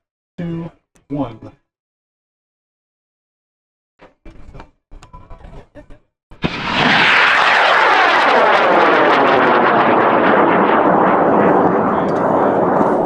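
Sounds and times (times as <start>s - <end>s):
rocket motor roaring: 6.4s - 13.0s.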